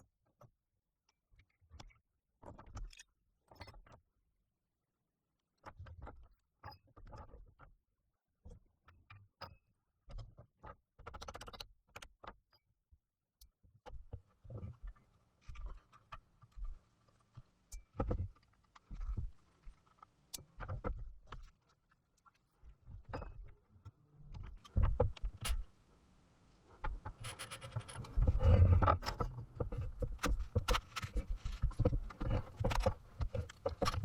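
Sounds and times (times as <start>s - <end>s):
irregular clicks and knocks: 26.8s - 34.0s.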